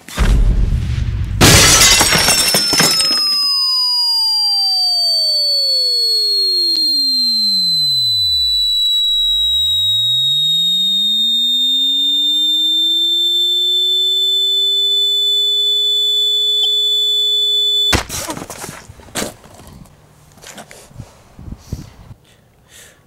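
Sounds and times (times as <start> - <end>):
low tone sweeping to a rumble: 0.0 - 1.7
high-pitched synth whine: 0.0 - 18.0.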